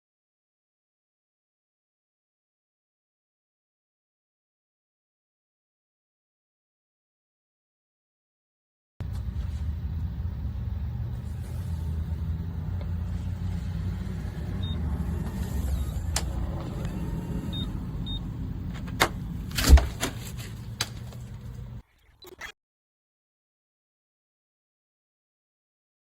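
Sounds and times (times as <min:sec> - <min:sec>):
low rumble: 0:09.0 - 0:21.8.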